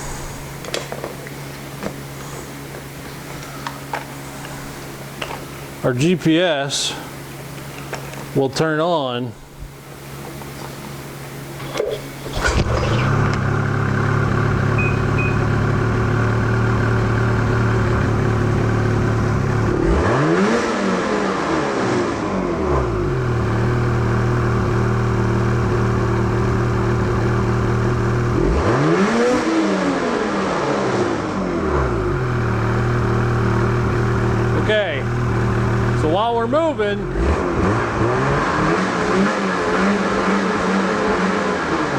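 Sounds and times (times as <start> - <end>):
snowmobile engine revving: 11.4 - 41.9.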